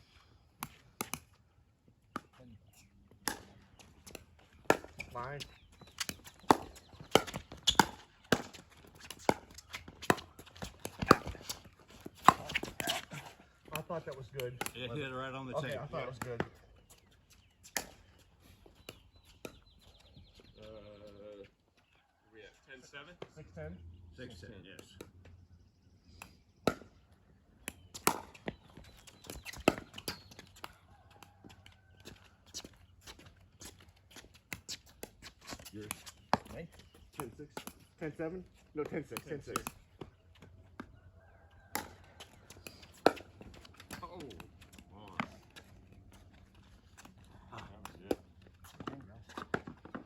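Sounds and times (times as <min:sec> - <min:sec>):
ball bouncing on court: 0:03.2 - 0:15.0, 0:27.7 - 0:31.5, 0:38.8 - 0:40.2, 0:41.7 - 0:45.8.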